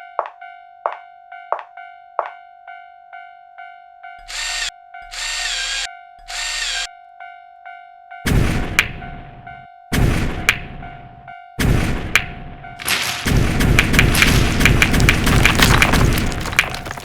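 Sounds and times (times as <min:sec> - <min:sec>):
railroad crossing bell ringing: 0:00.0 - 0:05.1, 0:06.9 - 0:08.3.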